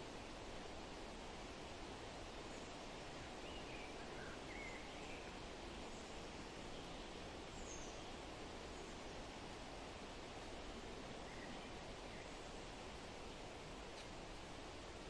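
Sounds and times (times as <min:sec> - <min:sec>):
outdoor background noise: 0:00.0 - 0:15.0
faint bird chirps: 0:02.5 - 0:09.3, 0:10.7 - 0:12.6.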